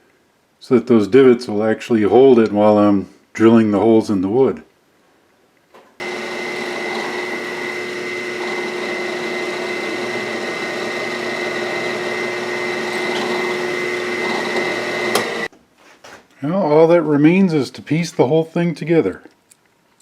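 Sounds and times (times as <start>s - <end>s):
electric drill drilling wood: 6.0s - 15.5s.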